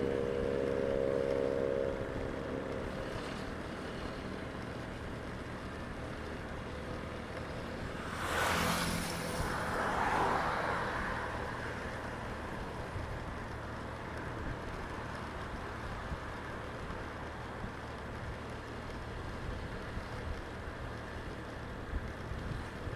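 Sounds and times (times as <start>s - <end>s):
traffic rumble: 0.0s - 22.9s
vehicle passing close: 7.3s - 16.4s.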